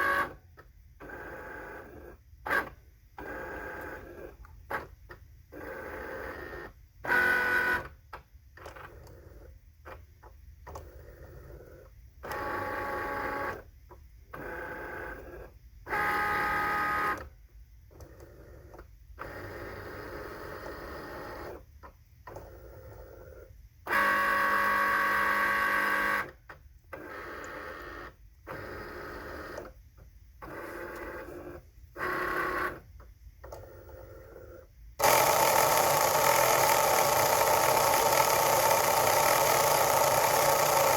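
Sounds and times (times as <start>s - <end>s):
cutting machine motors whining: 35.0s - 40.9s.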